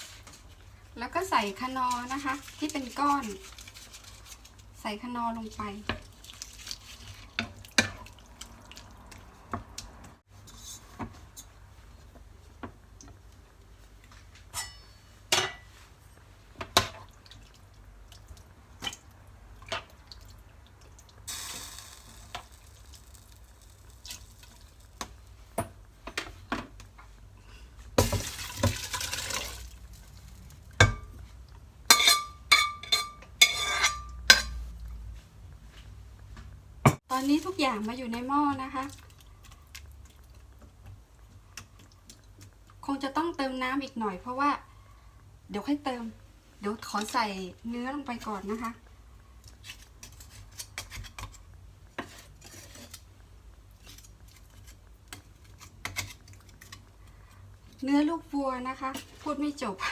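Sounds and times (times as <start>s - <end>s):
utensil clinking against pot: 31.9s - 34.6s.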